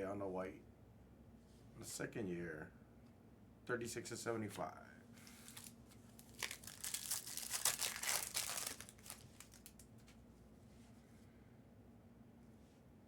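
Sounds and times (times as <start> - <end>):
plastic foil wrapper crinkling: 5.2 - 10.1.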